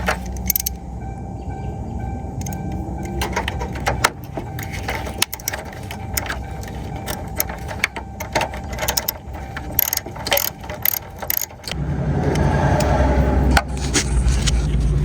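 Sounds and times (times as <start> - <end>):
ratchet wrench clicking: 0.0 - 0.8, 2.4 - 11.8.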